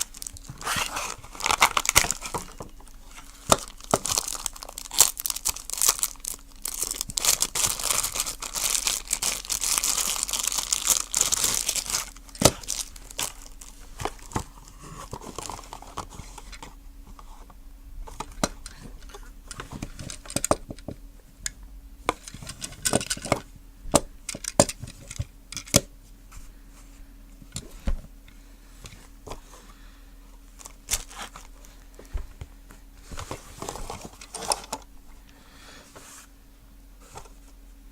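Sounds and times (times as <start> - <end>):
packaging tearing and crinkling: 0.0 - 16.0.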